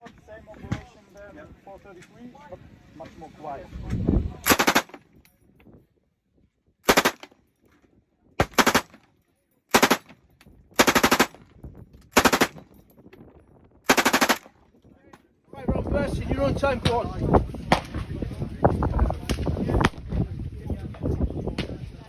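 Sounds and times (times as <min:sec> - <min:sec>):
automatic gunfire bursts: 0:04.4 - 0:05.0, 0:06.9 - 0:07.3, 0:08.4 - 0:09.0, 0:09.7 - 0:10.1, 0:10.8 - 0:11.4, 0:12.2 - 0:12.6, 0:13.9 - 0:14.5.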